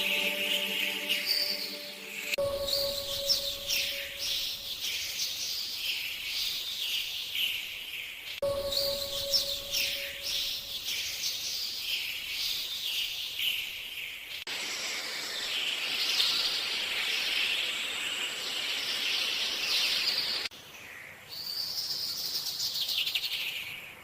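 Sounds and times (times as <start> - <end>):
birds chirping: 0.0 - 13.7.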